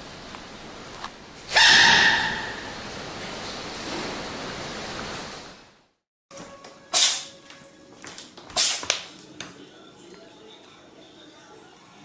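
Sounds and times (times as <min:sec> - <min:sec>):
animal sneezes: 0:06.9 - 0:07.3, 0:08.5 - 0:08.9.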